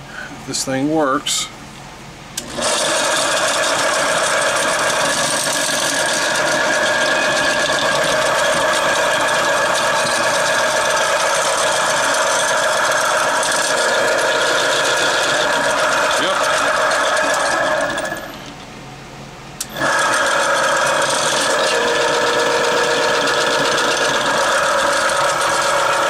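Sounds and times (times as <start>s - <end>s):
drain auger motor whirring: 2.4s - 18.6s, 19.6s - 26.0s.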